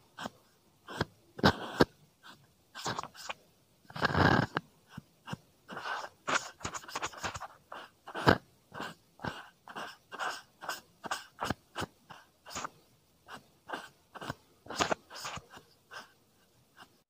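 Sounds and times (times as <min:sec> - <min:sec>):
crinkly scratching and rustling: 0:05.7 - 0:07.6.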